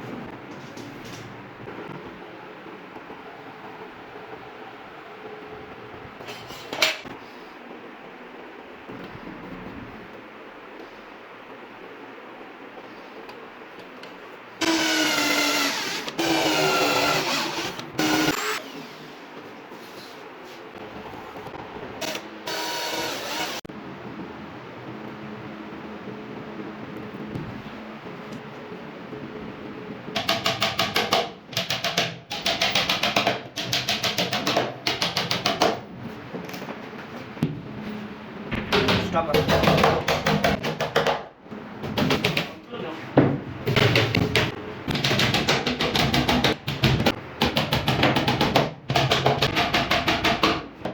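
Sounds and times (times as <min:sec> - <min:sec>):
electric power tool whine: 0:22.1 - 0:23.7.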